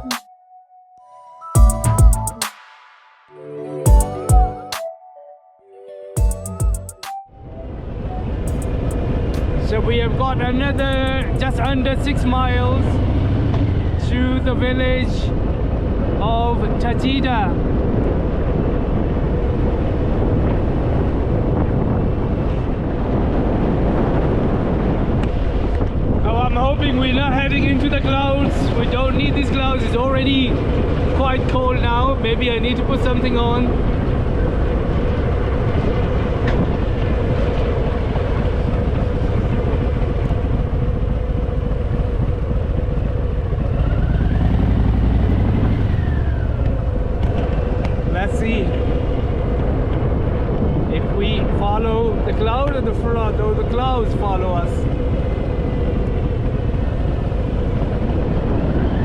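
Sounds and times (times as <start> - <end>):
wind buffeting microphone: 7.6 - 59.0
motorcycle engine running: 10.8 - 11.9, 37.1 - 48.1.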